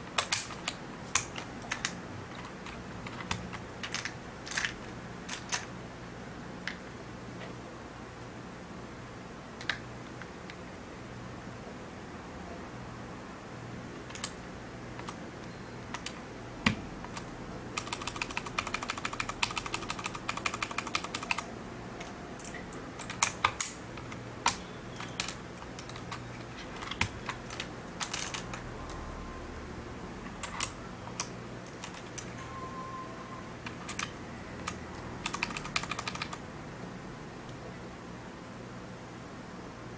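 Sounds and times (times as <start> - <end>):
mechanical keypad keystrokes: 15.0 - 29.0, 30.4 - 32.8, 33.6 - 36.4.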